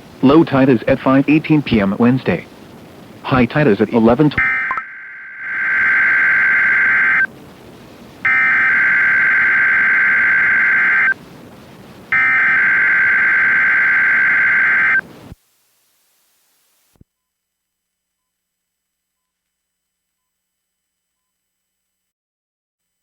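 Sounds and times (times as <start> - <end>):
buzzing data tone bursts: 4.4 - 7.3, 8.2 - 11.2, 12.1 - 15.0.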